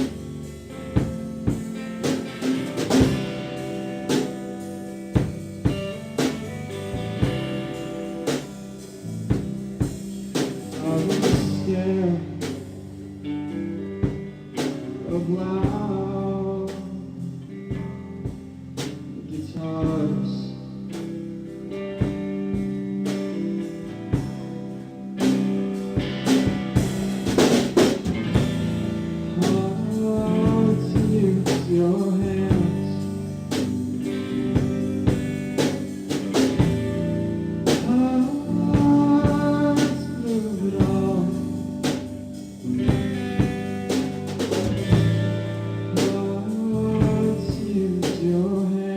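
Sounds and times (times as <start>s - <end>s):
live rock band playing: 0.0s - 48.9s
person singing: 10.6s - 12.8s, 14.9s - 17.3s, 29.3s - 33.3s, 37.7s - 42.0s, 45.8s - 48.9s.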